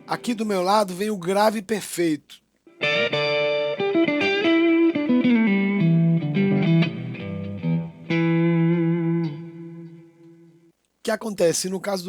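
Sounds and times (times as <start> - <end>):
electric guitar notes and chords: 0.0 - 0.2, 2.7 - 10.6.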